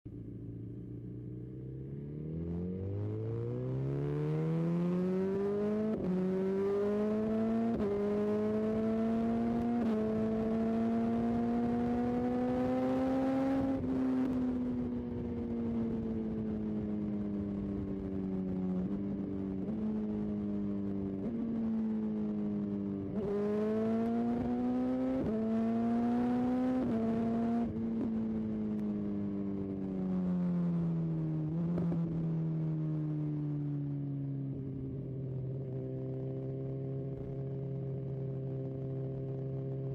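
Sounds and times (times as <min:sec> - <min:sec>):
motorcycle engine accelerating: 0:00.1 - 0:39.9.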